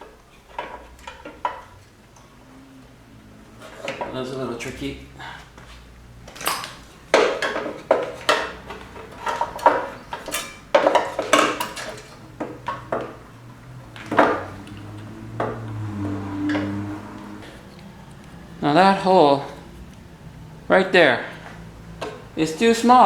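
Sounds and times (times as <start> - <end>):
small metal parts clinking: 6.3 - 13.0.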